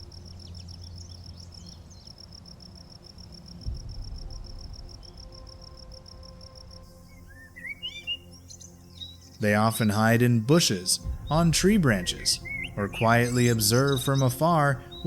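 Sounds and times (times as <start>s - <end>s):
insect chirping: 0.0s - 9.4s, 10.9s - 15.0s
low rumble: 3.4s - 6.8s, 11.0s - 15.0s
bird chirps: 7.1s - 9.6s, 10.9s - 15.0s.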